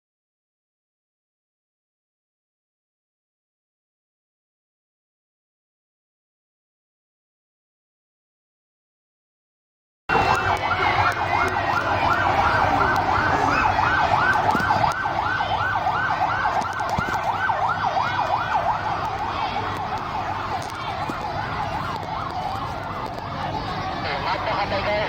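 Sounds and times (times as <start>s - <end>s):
emergency siren yelping: 10.1s - 25.0s.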